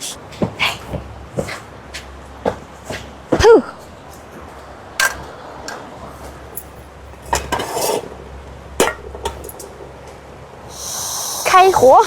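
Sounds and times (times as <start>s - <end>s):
metal cooking pot clanking: 7.2s - 8.1s, 8.8s - 9.9s.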